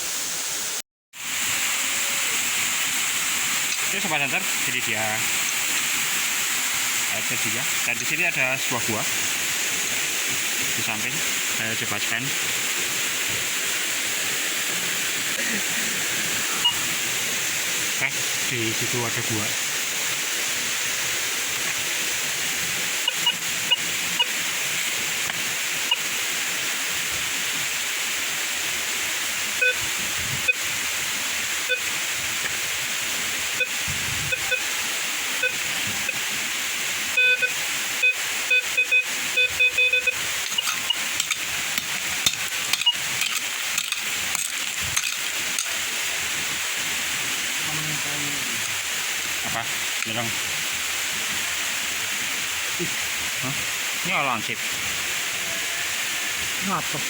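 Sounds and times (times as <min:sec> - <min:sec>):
waterfall rushing: 0:00.0 - 0:57.0
metal detector beeps: 0:23.0 - 0:24.4, 0:25.8 - 0:26.1, 0:29.6 - 0:29.8, 0:31.7 - 0:31.9, 0:33.6 - 0:34.7, 0:37.1 - 0:41.4, 0:42.7 - 0:43.9.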